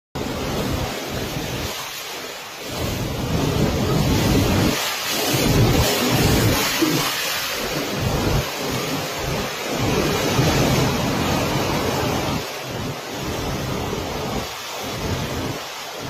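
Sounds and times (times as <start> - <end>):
wind gusts buffeting microphone: 0.2 - 16.0
heavy rain hissing: 3.0 - 9.0.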